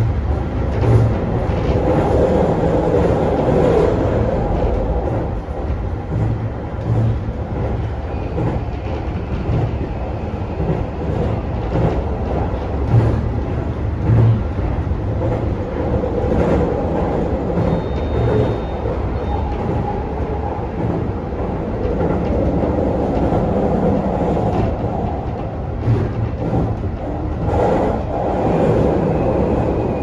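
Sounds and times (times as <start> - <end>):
train wheels rumbling on rail: 0.0 - 30.0
dull thumps from track: 2.9 - 9.9, 10.5 - 18.7, 20.7 - 28.8.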